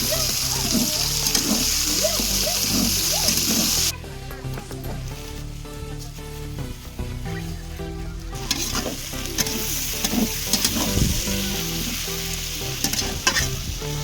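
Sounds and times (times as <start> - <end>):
food sizzling in hot oil: 0.0 - 3.9, 8.3 - 14.0
utensil scraping a pan: 0.6 - 2.0, 8.4 - 11.1.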